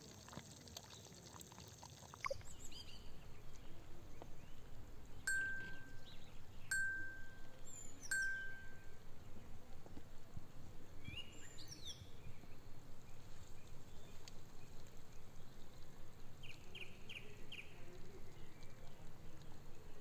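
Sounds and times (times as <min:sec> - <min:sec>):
bird chirps: 0:02.2 - 0:09.6, 0:11.0 - 0:14.2
low rumble: 0:02.4 - 0:16.4.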